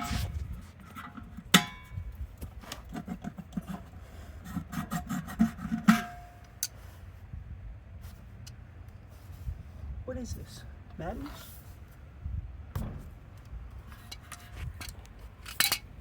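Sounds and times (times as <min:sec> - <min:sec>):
metal scraping: 0:00.0 - 0:02.0.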